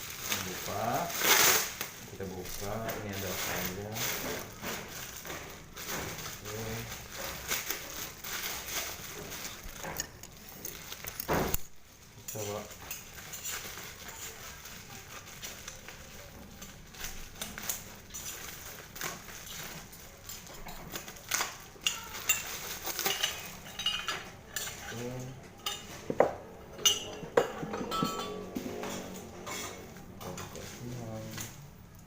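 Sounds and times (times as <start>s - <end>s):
packaging rustling: 0.0s - 26.1s
metal parts clinking: 21.8s - 26.0s, 26.8s - 29.8s.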